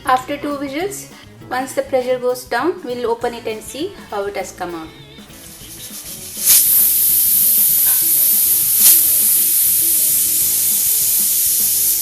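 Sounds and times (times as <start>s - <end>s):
pressure cooker steam hissing: 5.2s - 12.0s.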